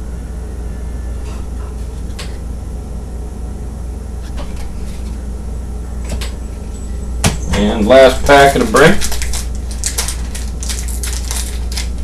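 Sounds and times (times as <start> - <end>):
steady low hum: 0.0 - 12.0
card pack crackles: 8.2 - 12.0.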